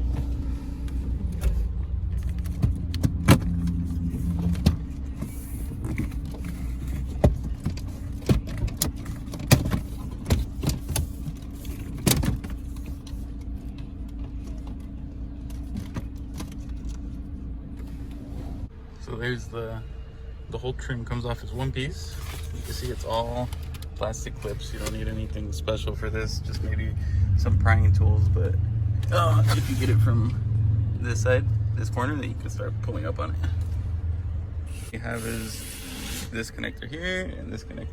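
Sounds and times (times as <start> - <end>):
low hum: 9.8 - 37.9.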